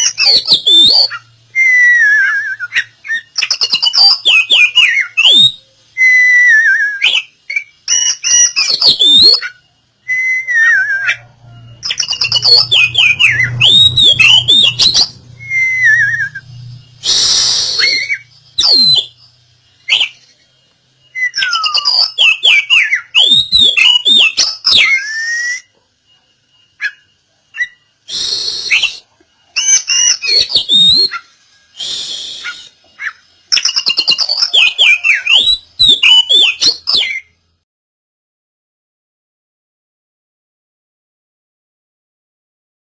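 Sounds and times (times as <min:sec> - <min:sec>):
songbird whistles and chirps: 0:00.0 - 0:37.6
bird harsh rasping calls: 0:10.2 - 0:20.5, 0:26.8 - 0:37.3.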